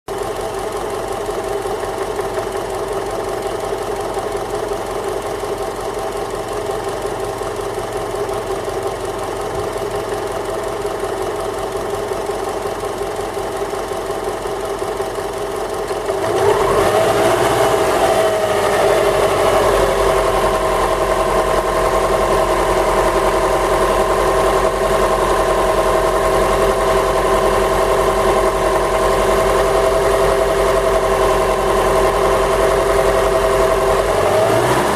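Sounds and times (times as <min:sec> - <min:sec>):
car engine idling with a knock: 0:07.4 - 0:11.2.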